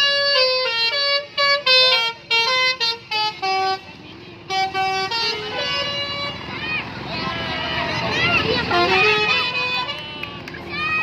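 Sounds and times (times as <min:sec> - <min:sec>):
musical bus air horn: 0:00.0 - 0:06.5, 0:08.5 - 0:10.4.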